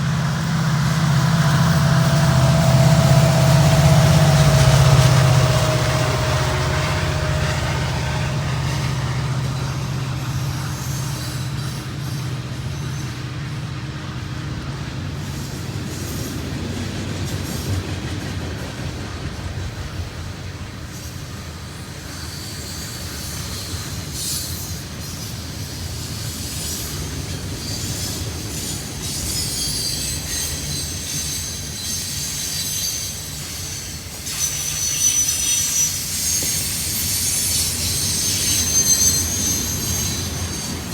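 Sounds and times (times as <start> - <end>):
high-pitched wheel squeal: 0.0 - 13.8, 22.0 - 40.9
railroad cars rumbling past: 0.0 - 40.9.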